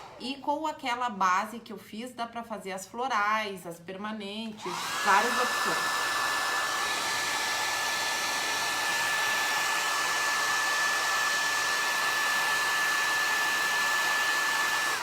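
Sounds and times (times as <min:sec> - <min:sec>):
hair dryer running: 0:00.0 - 0:00.2, 0:04.5 - 0:15.0.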